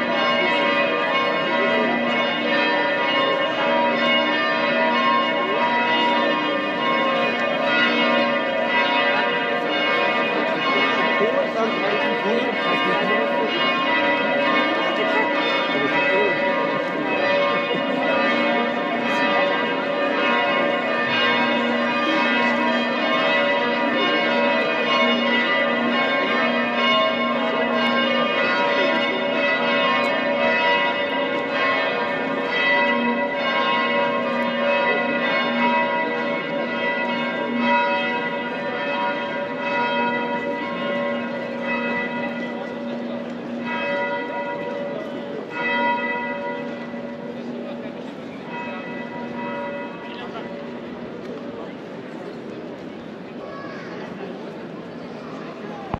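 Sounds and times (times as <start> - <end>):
church bells ringing: 0.0 - 55.9.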